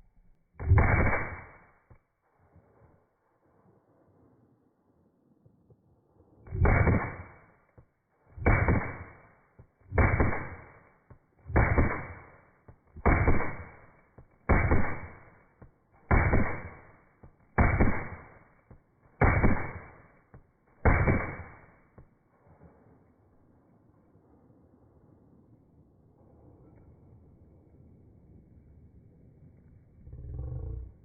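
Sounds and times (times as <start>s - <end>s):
slowed pistol shots booming: 0.6s - 2.0s, 6.5s - 7.6s, 8.4s - 22.0s.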